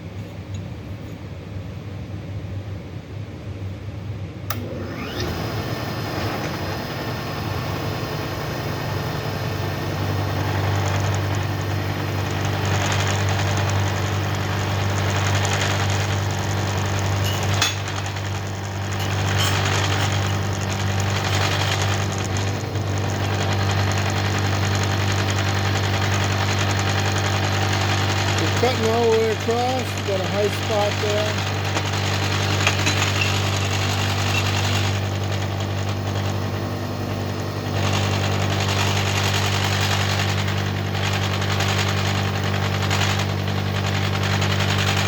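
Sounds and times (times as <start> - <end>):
motor humming: 4.5 - 45.0
metal grinding: 9.8 - 36.7.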